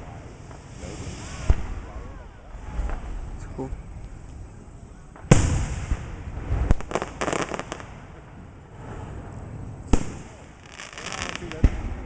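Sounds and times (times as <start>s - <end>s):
firework loud bang: 0.0s - 3.4s, 5.1s - 7.9s, 9.9s - 12.0s
crackling firework pops: 5.1s - 8.2s, 9.9s - 12.0s.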